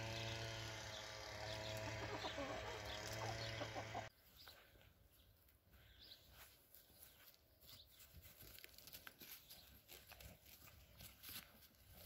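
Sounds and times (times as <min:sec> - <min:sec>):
small birds chirping: 0:00.0 - 0:08.5, 0:09.2 - 0:11.2
chickens clucking: 0:01.1 - 0:04.6.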